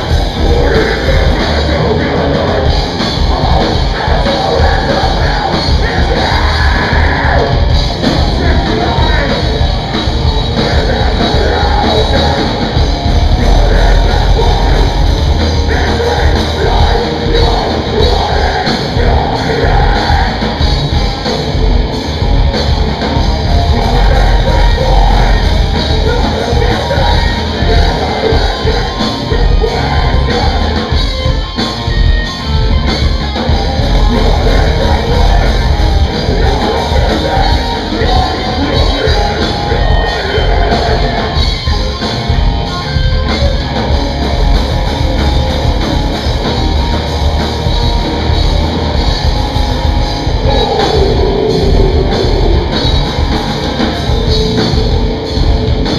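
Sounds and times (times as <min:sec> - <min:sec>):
sung and shouted vocals: 0:00.0 - 0:20.8, 0:23.4 - 0:31.0, 0:33.7 - 0:42.4, 0:49.9 - 0:54.7
heavy metal band playing live: 0:00.0 - 0:55.9.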